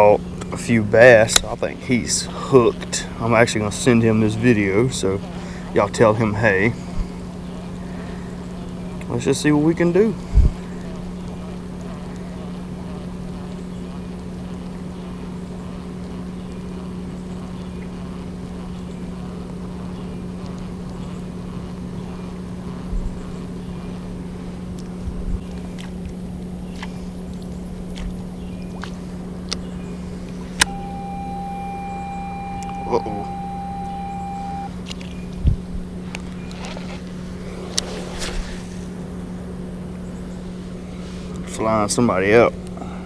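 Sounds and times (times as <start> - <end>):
low mechanical motor hum: 0.0 - 43.0
steady high tone: 30.6 - 34.7.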